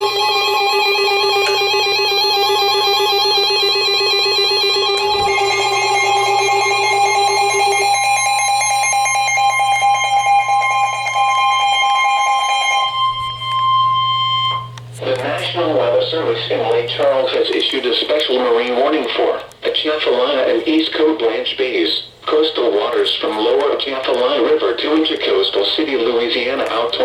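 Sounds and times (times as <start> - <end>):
multi-tone alert alarm: 0.0 - 19.0.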